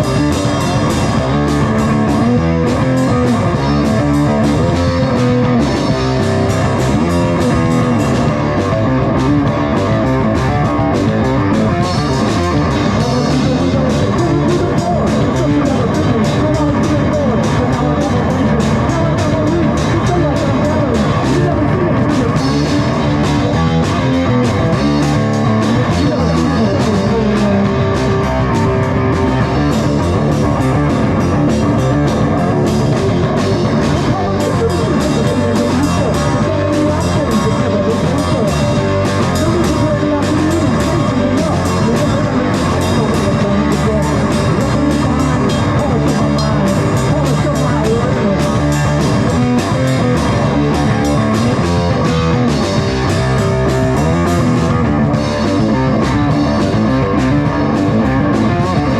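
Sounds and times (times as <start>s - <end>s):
rock music with guitar and drums: 0.0s - 58.9s.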